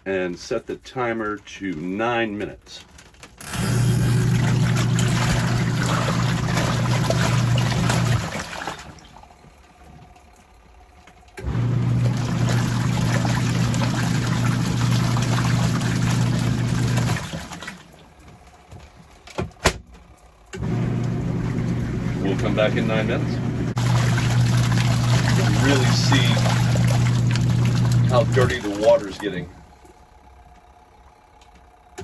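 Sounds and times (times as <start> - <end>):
washing machine motor humming: 3.4 - 32.0
water churning and sloshing: 3.9 - 9.9, 11.4 - 18.6, 20.6 - 30.0.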